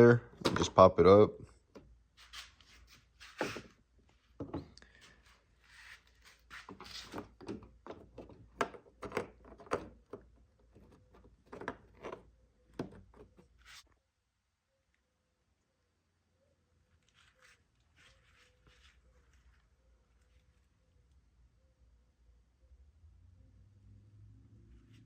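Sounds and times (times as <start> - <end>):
plastic scraping: 5.8 - 13.8
plastic clicks and knocks: 7.1 - 13.4.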